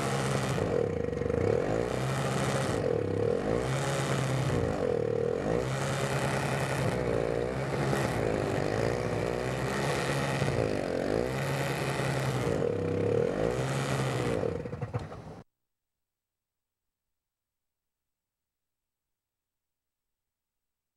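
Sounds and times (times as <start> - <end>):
engine running with sweeping pitch: 0.0 - 15.4.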